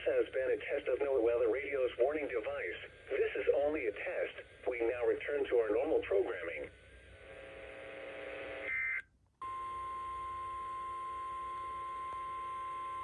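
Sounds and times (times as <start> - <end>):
steady warning alarm tone: 8.7 - 13.0.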